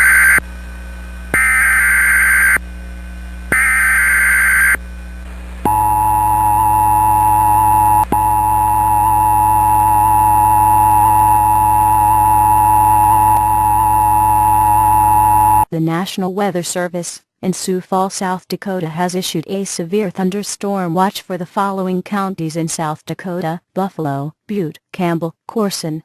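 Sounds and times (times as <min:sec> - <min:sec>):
data burst tones: 0:00.0 - 0:00.4, 0:01.3 - 0:02.6, 0:03.5 - 0:04.8, 0:05.6 - 0:15.7
two-tone attention signal: 0:00.0 - 0:00.4, 0:05.7 - 0:15.7.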